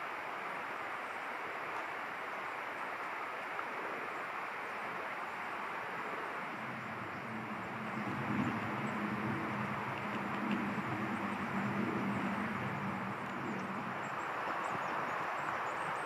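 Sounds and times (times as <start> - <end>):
steady rushing noise: 3.4 - 16.0
low engine hum: 5.3 - 16.0.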